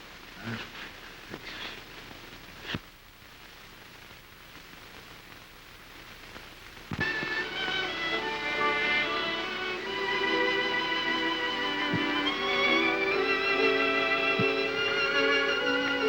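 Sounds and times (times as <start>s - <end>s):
film soundtrack hiss: 0.0s - 16.0s
violin music: 7.0s - 16.0s.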